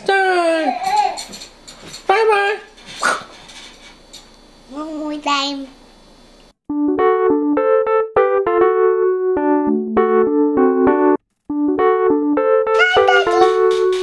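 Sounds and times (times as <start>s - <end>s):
electric piano melody: 6.7s - 14.0s.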